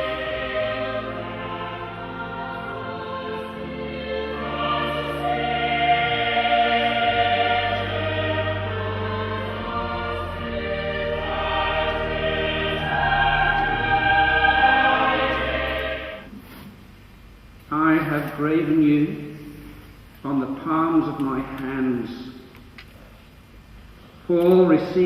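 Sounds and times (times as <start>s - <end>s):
low sustained notes: 0.0s - 16.3s
choir singing long held notes: 0.0s - 16.4s.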